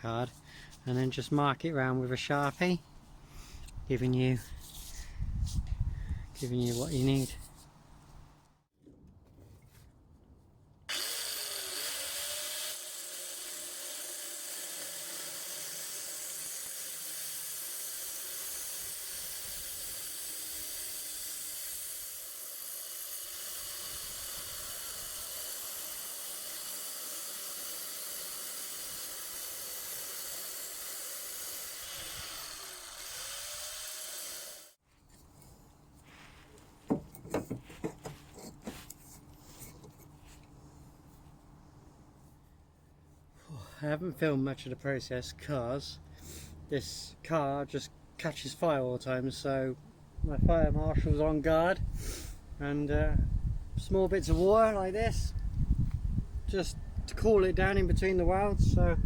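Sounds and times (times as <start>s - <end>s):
angle grinder cutting steel: 10.9s - 34.8s
sharp knocks: 36.9s - 38.2s.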